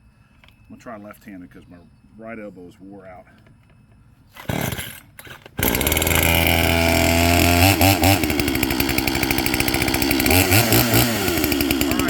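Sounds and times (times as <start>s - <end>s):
chainsaw starter cord rasp: 4.3s - 12.0s
chainsaw engine idling: 4.4s - 5.0s, 5.6s - 12.0s
chainsaw throttle blips: 4.4s - 12.0s.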